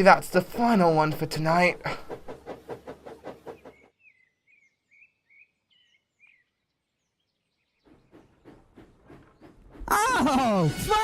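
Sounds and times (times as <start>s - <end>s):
faint bird chirps: 3.5s - 9.6s.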